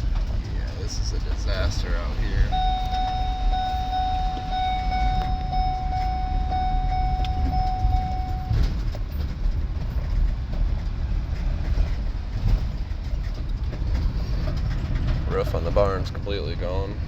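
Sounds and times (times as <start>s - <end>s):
vehicle rumbling: 0.0s - 17.0s
pulsing high tone: 2.5s - 8.7s.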